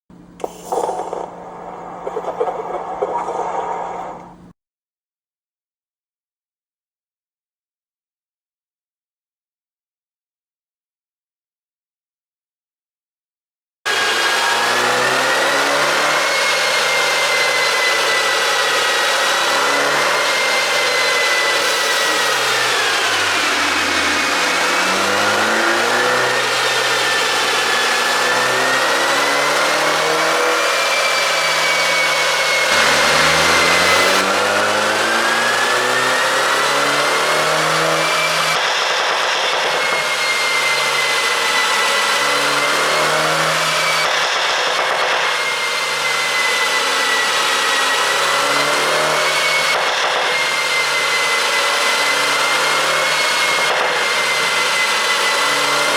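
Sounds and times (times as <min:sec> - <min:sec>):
steady high whine: 0:00.2 - 0:04.5, 0:21.3 - 0:37.2
car engine running: 0:21.6 - 0:38.6.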